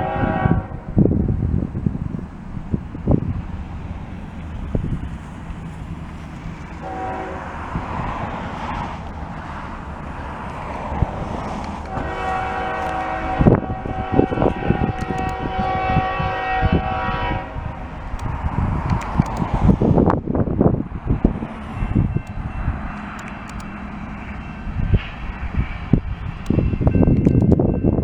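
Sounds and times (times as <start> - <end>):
locomotive air horn blasts: 0.0 - 20.6
low rumble: 0.0 - 28.0.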